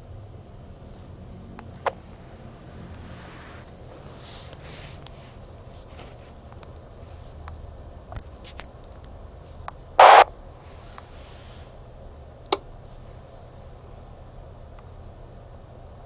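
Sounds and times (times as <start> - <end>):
handheld radio clicks: 10.0 - 10.3
radio noise burst: 10.0 - 10.3.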